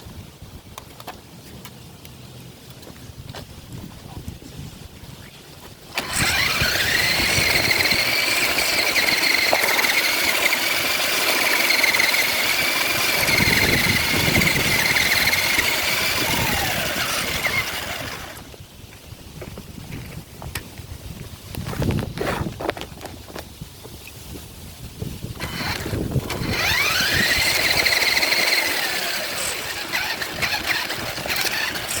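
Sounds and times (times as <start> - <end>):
rc car motor whine: 5.9 - 18.6, 25.3 - 32.0.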